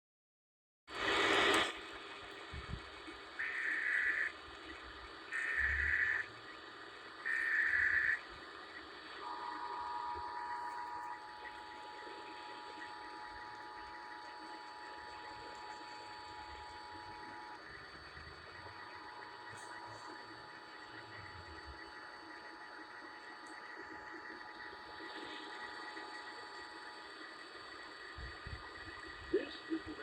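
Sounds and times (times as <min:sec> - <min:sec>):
warbling data header tone: 0:03.4 - 0:06.6, 0:07.2 - 0:30.0
two-tone attention signal: 0:09.2 - 0:12.0.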